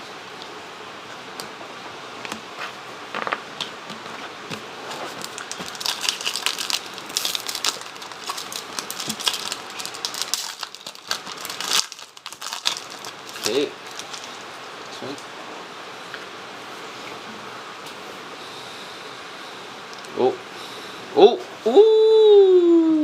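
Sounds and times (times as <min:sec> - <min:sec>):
foil pack crinkling: 0:04.8 - 0:15.2.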